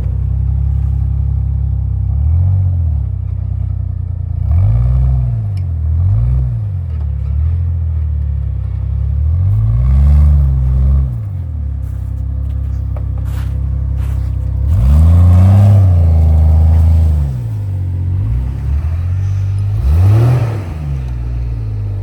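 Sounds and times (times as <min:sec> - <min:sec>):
car engine revving: 0:08.8 - 0:22.0.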